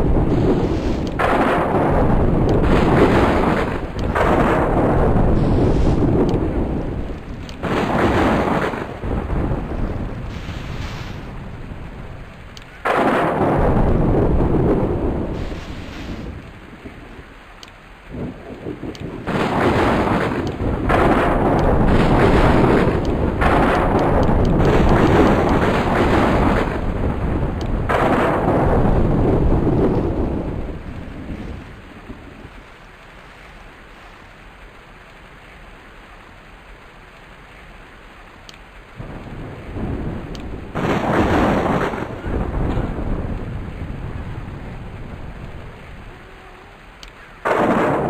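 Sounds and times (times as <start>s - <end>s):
thunder rolling: 0.0s - 17.4s, 18.1s - 32.8s, 39.0s - 48.0s
rain: 0.0s - 48.0s.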